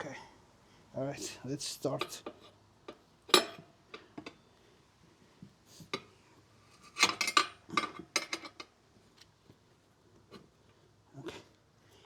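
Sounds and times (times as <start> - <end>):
metal tire levers clinking on rim: 2.0 - 4.4.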